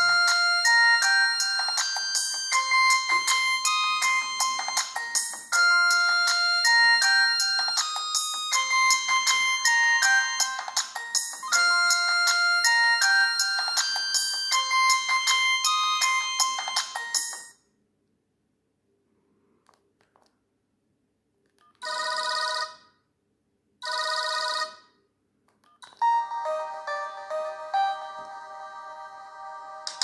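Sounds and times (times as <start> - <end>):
synthesized ringtone melody: 0.0 - 17.6, 25.8 - 30.0.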